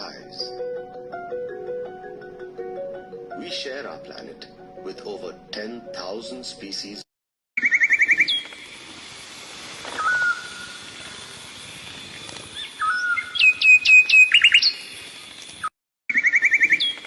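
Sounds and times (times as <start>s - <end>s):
bird song trills and whistles: 7.6s - 8.6s, 9.9s - 10.8s, 12.1s - 17.0s.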